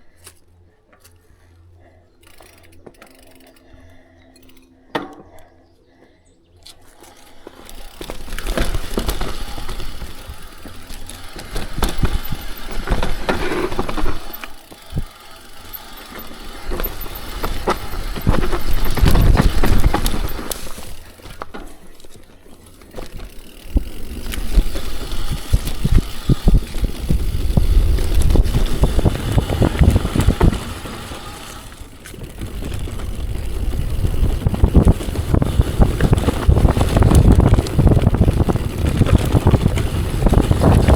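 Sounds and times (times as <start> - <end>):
bike chain and frame clattering: 2.2 - 4.8, 6.6 - 40.9
bike tyres on dirt: 6.6 - 40.9
wind buffeting microphone: 16.5 - 21.1, 23.2 - 40.9.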